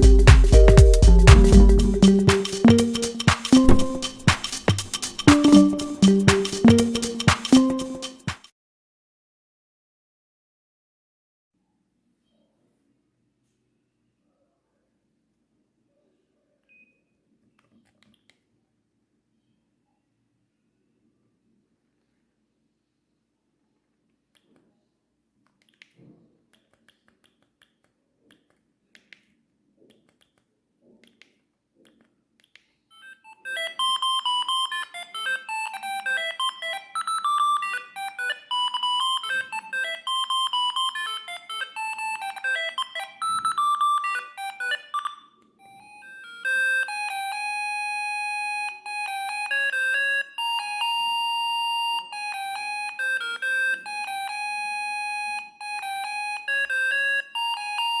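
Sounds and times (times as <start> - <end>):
mobile phone ringtone: 0.0 - 4.4, 5.3 - 8.2, 32.9 - 58.0.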